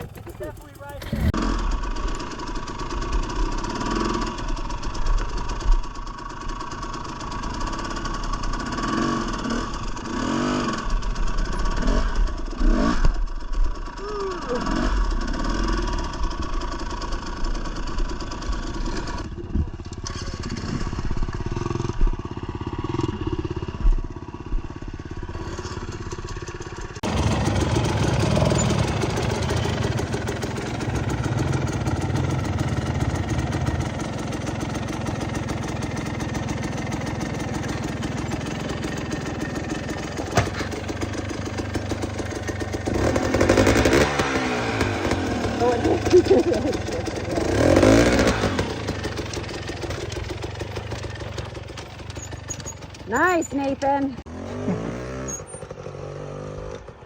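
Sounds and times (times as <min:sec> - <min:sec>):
two-stroke dirt bike engine: 0:00.0 - 0:57.0
bike knocking on rocks: 0:40.2 - 0:40.9.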